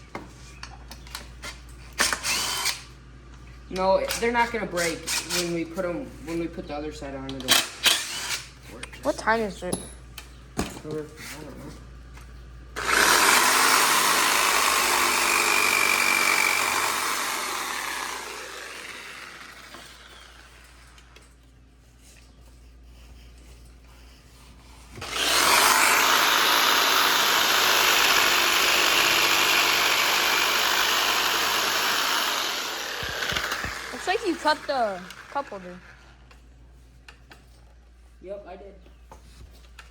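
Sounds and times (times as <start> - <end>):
power saw cutting wood: 2.0 - 2.9, 7.5 - 8.6, 12.8 - 21.2, 25.0 - 36.2.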